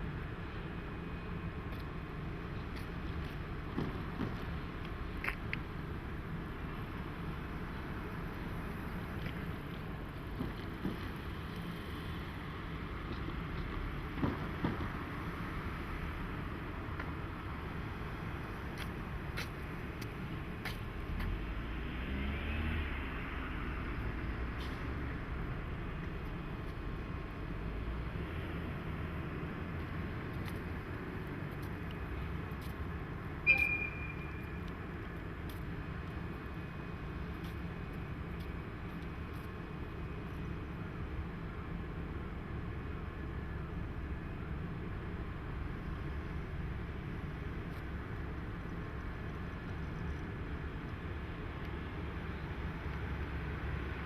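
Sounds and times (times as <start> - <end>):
sharp high squeak: 33.4 - 34.6.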